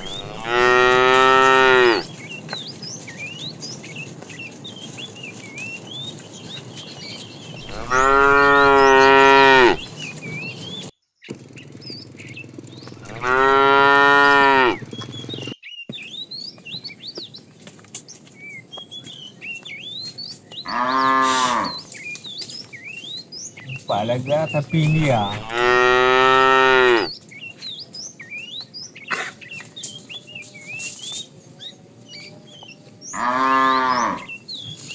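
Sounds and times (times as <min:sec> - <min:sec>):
cows mooing: 0:00.0 - 0:02.1, 0:07.6 - 0:09.9, 0:13.0 - 0:14.8, 0:20.6 - 0:22.0, 0:23.7 - 0:27.1, 0:33.1 - 0:34.4.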